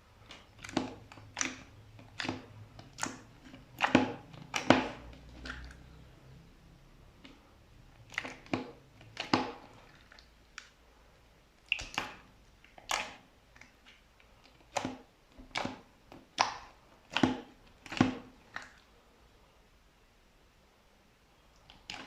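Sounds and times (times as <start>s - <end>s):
slime crackling squishes: 0.2s - 6.0s, 7.2s - 10.8s, 11.6s - 18.9s.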